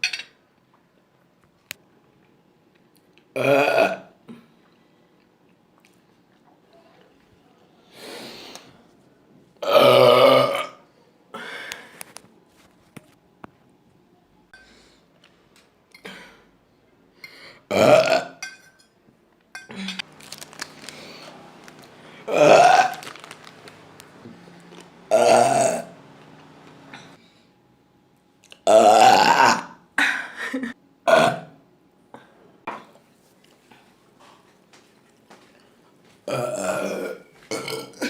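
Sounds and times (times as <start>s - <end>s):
woman burping loudly: 3.3s - 4.2s, 9.6s - 10.8s, 17.7s - 18.4s, 22.3s - 23.0s, 25.1s - 26.0s, 28.6s - 31.6s, 36.3s - 38.0s.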